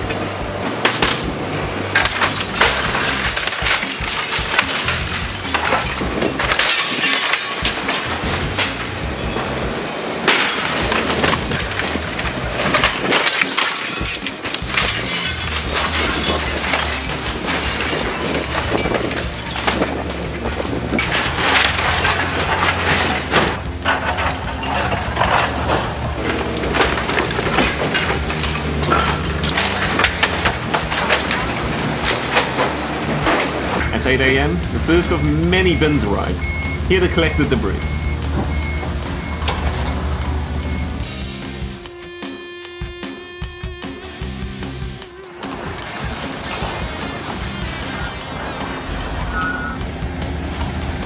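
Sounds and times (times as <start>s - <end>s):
debris cracking and crashing: 0.0s - 42.5s, 43.4s - 51.0s
background music: 0.0s - 51.0s
glass shattering: 0.1s - 41.8s, 45.2s - 51.0s
low engine hum: 48.6s - 51.0s.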